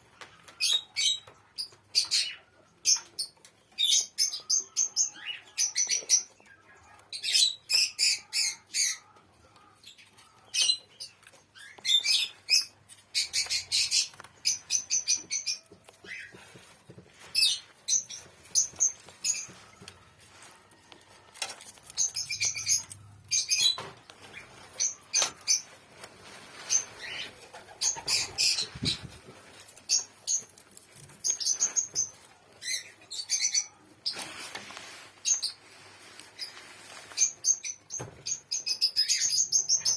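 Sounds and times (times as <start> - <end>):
birds chirping rapidly: 0.0 - 20.2, 21.5 - 34.3.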